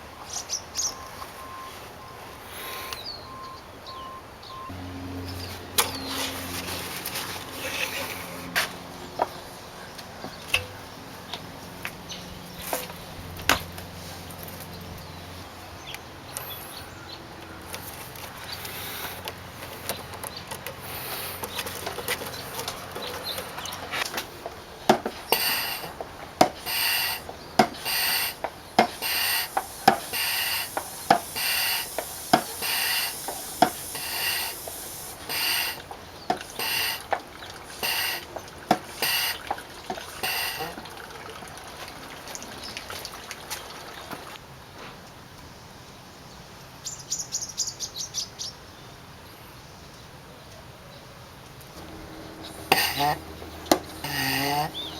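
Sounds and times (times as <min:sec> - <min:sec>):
hand suction pump squeaking: 0:05.8 - 0:08.6, 0:18.6 - 0:40.8, 0:51.8 - 0:54.9.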